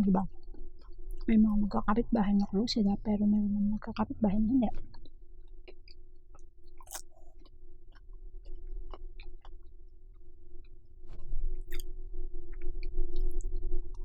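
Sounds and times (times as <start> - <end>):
steady low hum: 0.0 - 14.0
wet chewing mouth clicks: 4.7 - 9.7, 10.6 - 11.9.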